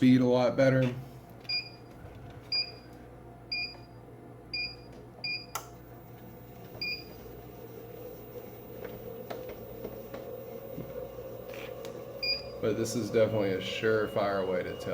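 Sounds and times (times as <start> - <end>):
treadmill console beeps: 1.4 - 14.9
motor humming: 5.6 - 14.9.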